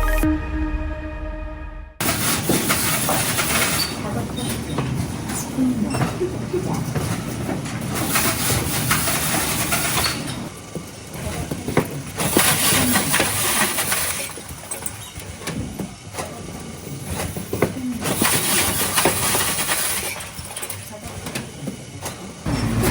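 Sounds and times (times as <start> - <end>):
machine hum: 22.5 - 22.9.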